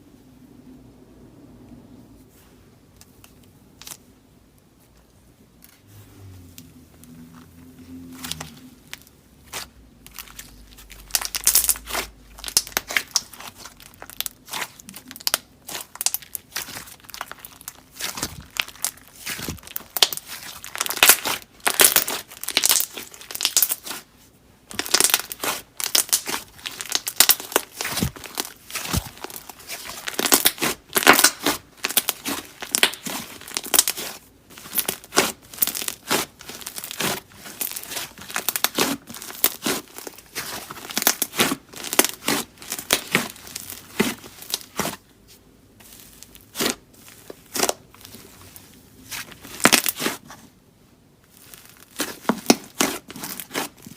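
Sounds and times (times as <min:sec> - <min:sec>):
slime squished by hand: 0:08.0 - 0:45.1, 0:45.8 - 0:50.4, 0:51.3 - 0:53.9.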